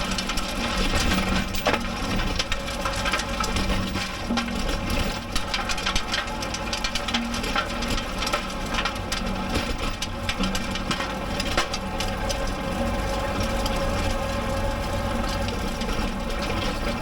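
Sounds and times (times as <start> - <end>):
soil clods crackling under tiller: 0.0 - 17.0
diesel tractor engine running: 4.6 - 17.0.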